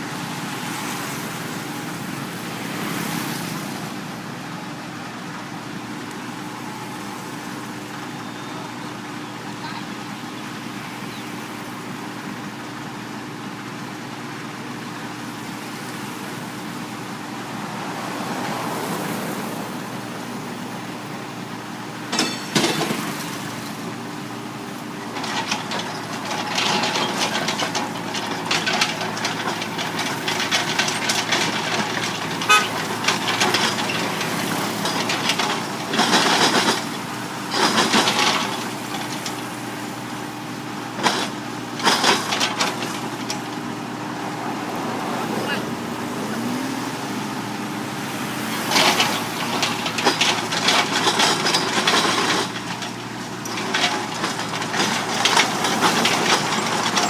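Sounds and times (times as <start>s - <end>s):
construction machinery engine running: 0.0s - 57.0s
metal rattling and clanking: 22.1s - 23.8s, 25.0s - 39.7s, 40.9s - 43.8s, 48.4s - 57.0s.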